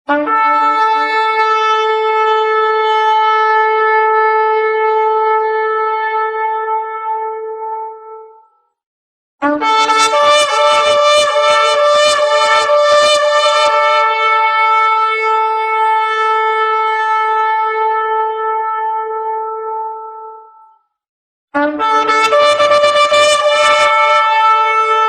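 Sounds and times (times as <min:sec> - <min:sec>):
shofar blasts: 0:00.1 - 0:08.4, 0:09.4 - 0:20.8, 0:21.6 - 0:25.0.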